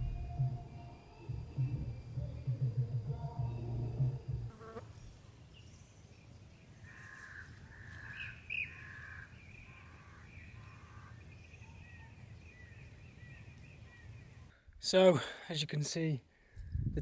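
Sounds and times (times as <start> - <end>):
birds calling: 6.6 - 14.5.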